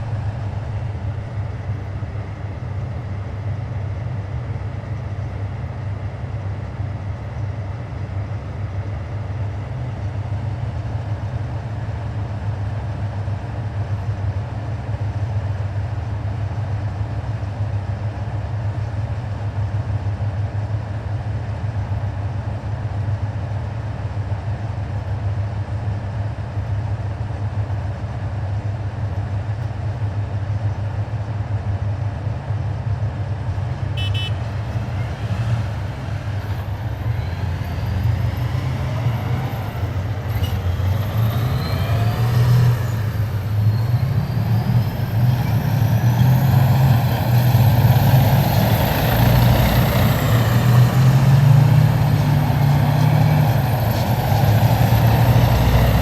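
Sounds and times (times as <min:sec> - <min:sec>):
heavy vehicles driving past: 0:00.0 - 0:05.6, 0:33.2 - 0:56.0
vehicle engine revving: 0:33.8 - 0:56.0.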